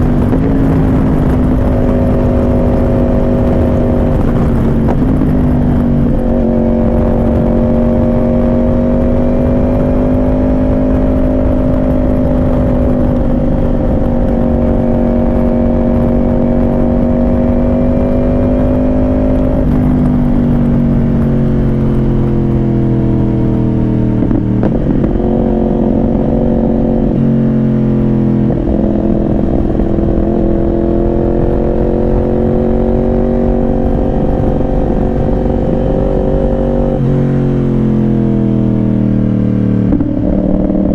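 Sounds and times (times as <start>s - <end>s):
motorcycle engine on the road: 0.0s - 40.9s.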